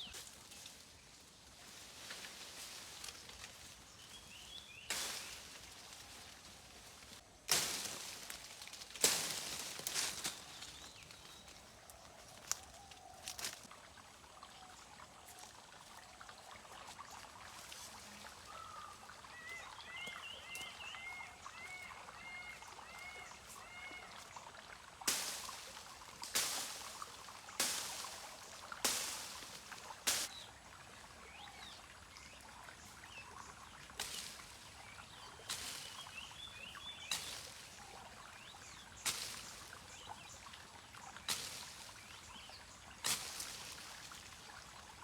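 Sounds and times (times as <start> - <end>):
water splashing: 13.1 - 45.0
bird chirping: 18.0 - 24.2.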